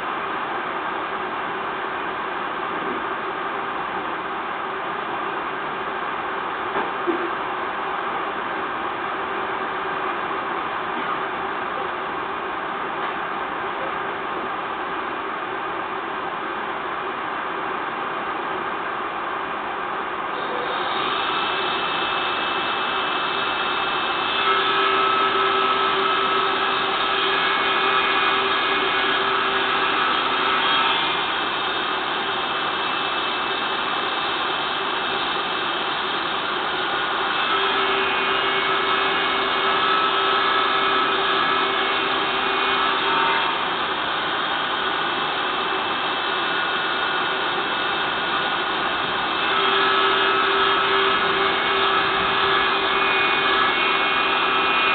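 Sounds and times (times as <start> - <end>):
power tool motor whirring: 35.5 - 54.9.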